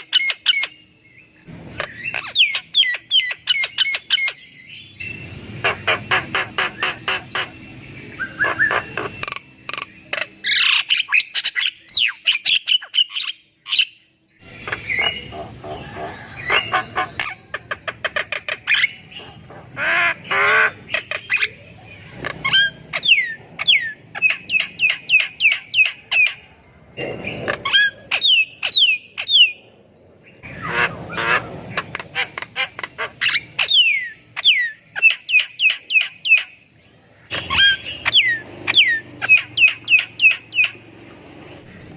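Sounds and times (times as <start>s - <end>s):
myna squawking and whistling: 5.0s - 29.6s, 37.3s - 40.8s.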